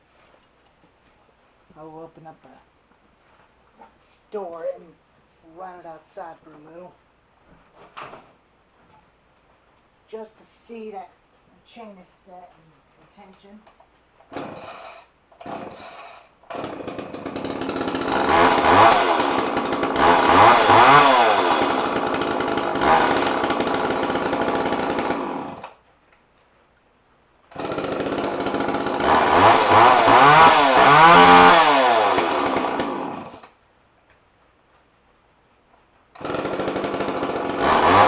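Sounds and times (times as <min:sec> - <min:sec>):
chainsaw revving: 0:14.3 - 0:25.8, 0:27.5 - 0:33.6, 0:36.2 - 0:38.0.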